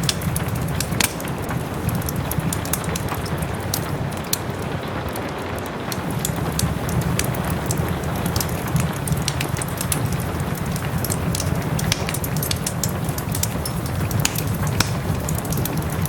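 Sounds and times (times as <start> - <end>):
steady soft rain: 0.0 - 16.0
wood fire crackling: 0.0 - 16.0.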